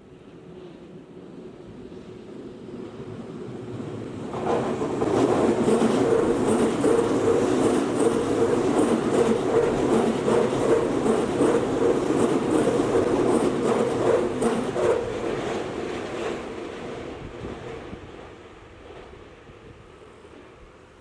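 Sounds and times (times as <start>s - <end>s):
wheels clacking on rails: 4.3s - 19.1s
electric train passing: 4.4s - 20.8s.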